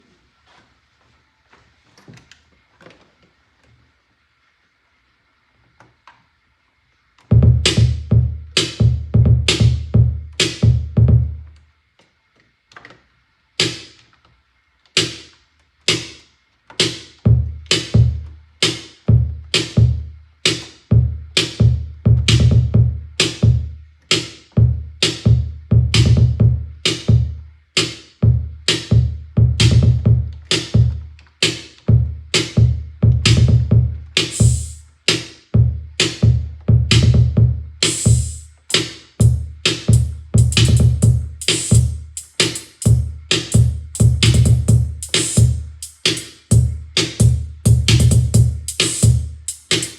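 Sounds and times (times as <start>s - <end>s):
deep bass drum notes: 7.3s - 11.4s, 17.3s - 18.3s, 19.1s - 20.2s, 20.9s - 23.8s, 24.6s - 27.4s, 28.2s - 31.0s, 31.9s - 34.8s, 35.6s - 49.9s
drum machine beat: 7.3s - 11.5s, 13.6s - 14.0s, 15.0s - 49.9s.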